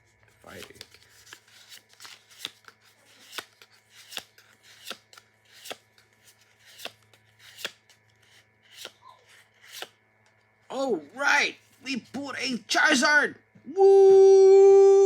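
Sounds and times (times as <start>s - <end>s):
cards swishing and tapping: 0.2s - 10.0s.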